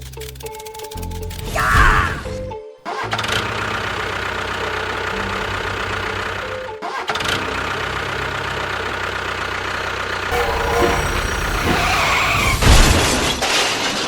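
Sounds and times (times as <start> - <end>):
small engine chugging: 3.1 - 13.0.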